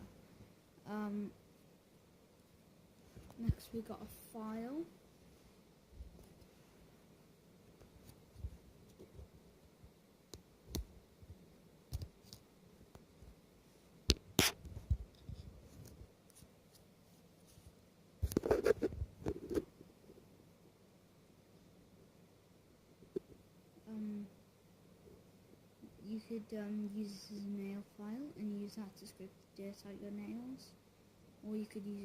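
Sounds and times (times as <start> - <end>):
small clicks and taps: 11.9 - 13.4.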